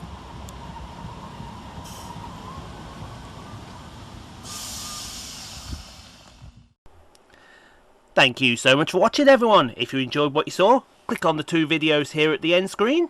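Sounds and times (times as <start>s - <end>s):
electric train rumbling: 0.0s - 6.8s
faint train whine: 0.0s - 6.8s
air hiss: 1.8s - 2.2s, 4.4s - 6.8s.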